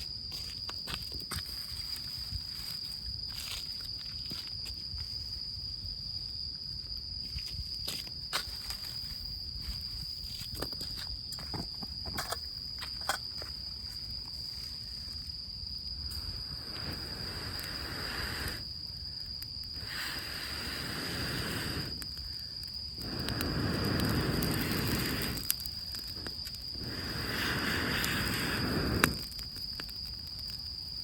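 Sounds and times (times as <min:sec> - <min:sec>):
cricket trill: 0:00.0 - 0:31.0
campfire crackling: 0:12.2 - 0:31.0
breath blown into fire: 0:16.1 - 0:18.7, 0:19.7 - 0:29.4.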